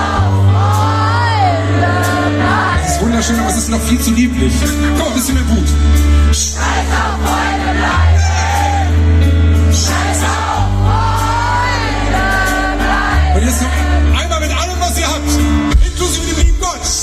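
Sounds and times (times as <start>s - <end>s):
crowd singing along: 0.0s - 4.4s, 6.0s - 14.6s
live rock band playing: 0.0s - 17.0s.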